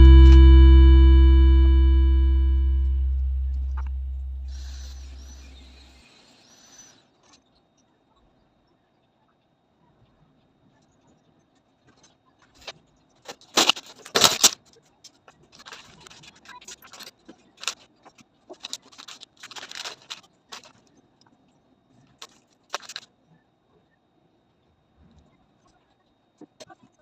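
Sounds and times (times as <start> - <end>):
packaging rustling: 18.6 - 20.7.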